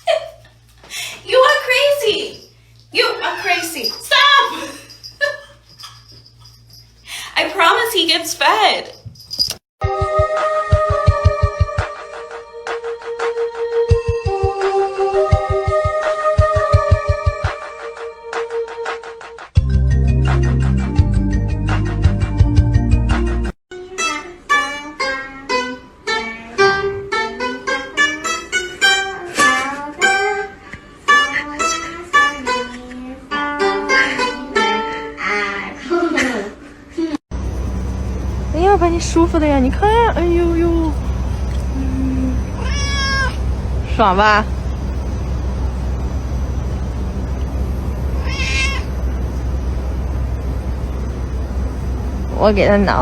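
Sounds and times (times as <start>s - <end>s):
steady low rumble: 37.3s - 53.0s
cat meowing: 42.0s - 43.5s, 48.2s - 48.9s.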